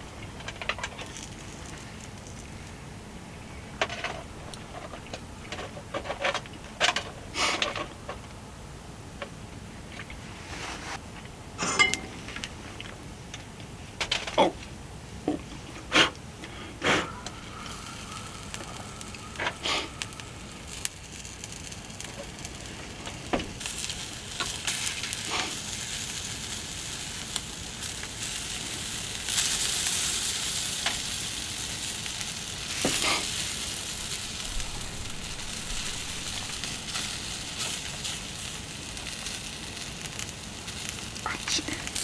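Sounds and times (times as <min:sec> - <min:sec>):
food sizzling in a pan: 0:17.6 - 0:42.0.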